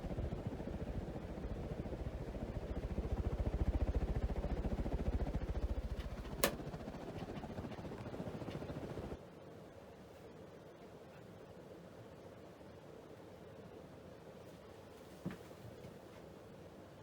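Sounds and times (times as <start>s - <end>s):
ceiling fan running: 0.0s - 9.2s
sharp click: 6.3s - 6.7s.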